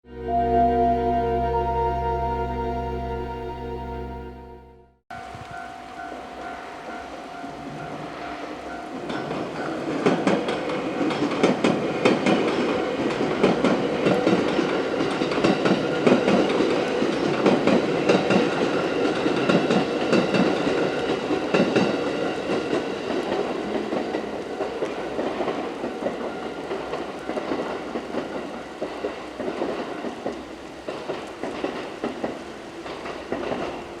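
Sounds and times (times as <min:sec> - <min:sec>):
train wheels clattering over rail joints: 0:25.2 - 0:34.0.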